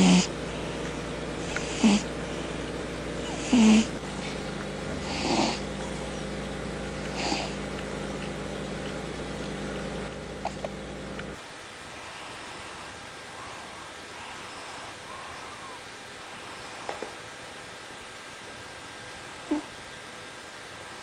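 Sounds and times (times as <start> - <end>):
low hum: 0.0 - 11.4
cat calling: 3.2 - 6.3.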